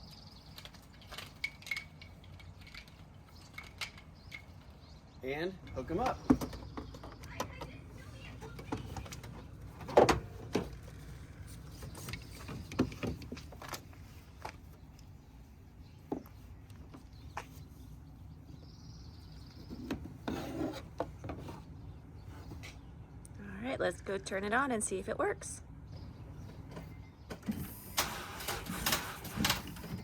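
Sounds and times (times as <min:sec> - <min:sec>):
rubbing and scraping: 0:19.5 - 0:22.8.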